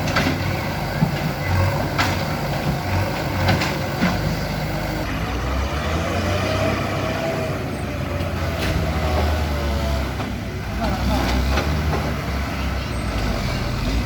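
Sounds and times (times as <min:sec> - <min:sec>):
diesel engine running under load: 0:00.0 - 0:14.0.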